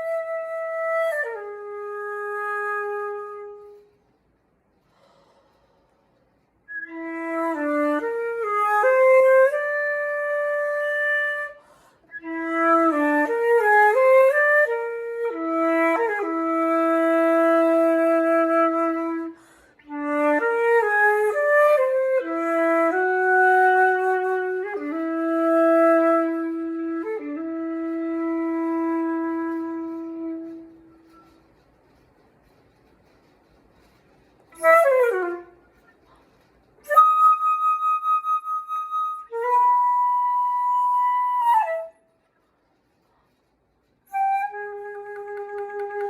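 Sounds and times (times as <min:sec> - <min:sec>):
solo flute playing: 0:00.0 - 0:04.0, 0:06.6 - 0:31.4, 0:34.5 - 0:36.0, 0:36.8 - 0:42.2, 0:44.1 - 0:46.0
flute breath noise: 0:04.7 - 0:07.0, 0:11.5 - 0:12.4, 0:19.2 - 0:19.9.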